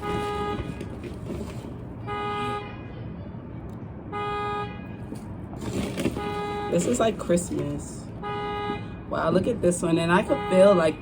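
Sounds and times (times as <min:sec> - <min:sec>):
vehicle horn honking: 0:00.0 - 0:01.1, 0:02.0 - 0:03.0, 0:04.1 - 0:05.2, 0:05.8 - 0:07.0, 0:08.2 - 0:09.0, 0:10.2 - 0:11.0.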